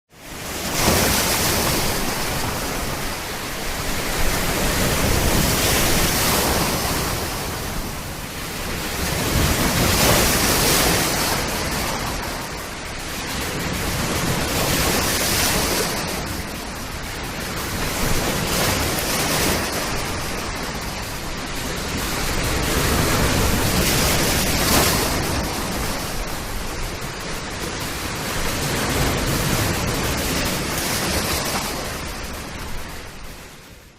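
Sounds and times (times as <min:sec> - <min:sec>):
sea waves breaking: 0:00.2 - 0:33.9.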